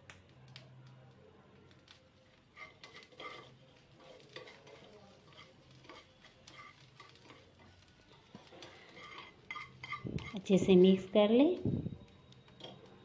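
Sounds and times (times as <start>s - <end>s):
metal spoon scraping a pan: 2.4s - 11.6s.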